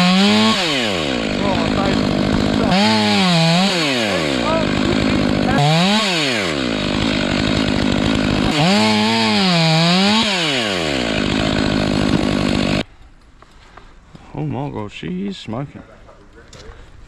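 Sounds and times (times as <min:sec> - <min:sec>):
two-stroke chainsaw revving: 0:00.0 - 0:12.8.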